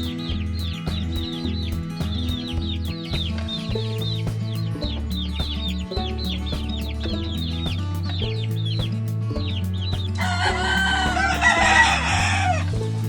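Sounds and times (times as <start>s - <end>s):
chicks peeping: 0.0s - 12.8s
music with bass line: 0.0s - 13.0s
rooster crowing: 10.2s - 12.7s.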